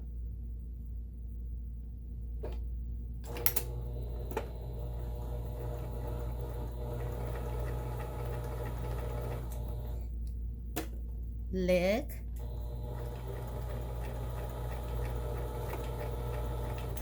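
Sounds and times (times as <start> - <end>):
sewing machine stitching: 3.3 - 10.0, 12.4 - 17.0
sewing machine clicks: 12.4 - 17.0.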